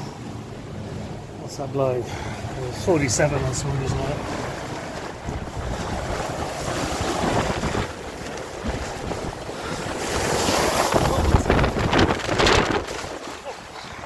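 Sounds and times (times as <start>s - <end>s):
strong wind buffeting microphone: 0.0s - 14.0s
loose material flapping: 3.8s - 13.5s.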